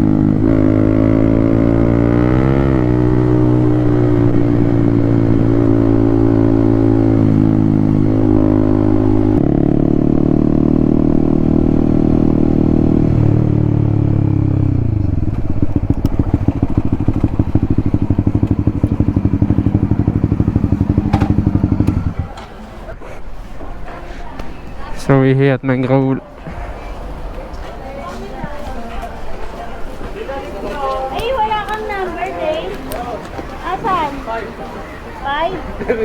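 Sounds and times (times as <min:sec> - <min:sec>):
motorcycle engine running: 0:00.0 - 0:22.6.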